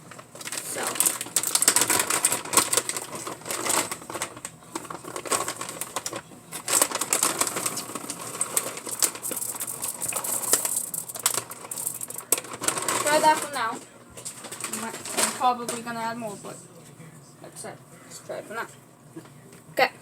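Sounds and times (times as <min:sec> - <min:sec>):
chocolate chips pouring into bowl: 0:06.7 - 0:13.5.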